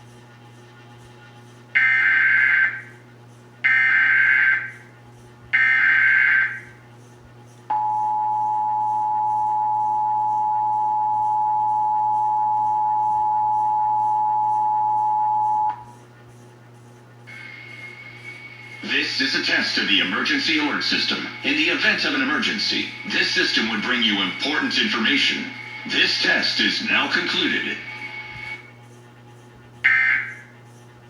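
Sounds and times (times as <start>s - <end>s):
two-tone attention signal: 7.7s - 15.8s
screeching digital data bursts: 17.3s - 28.7s.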